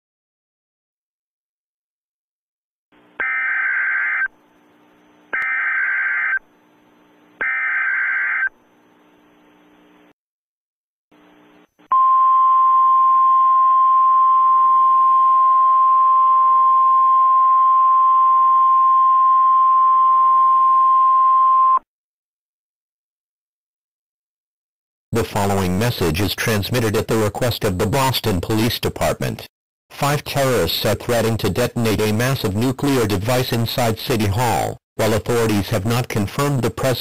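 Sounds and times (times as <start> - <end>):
screechy data tone bursts: 3.2 - 4.4, 5.3 - 6.5, 7.4 - 8.6.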